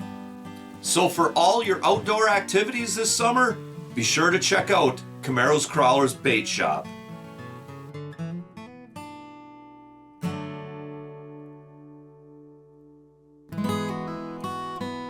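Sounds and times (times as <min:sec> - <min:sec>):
acoustic guitar plucked and strummed: 0:00.0 - 0:15.0.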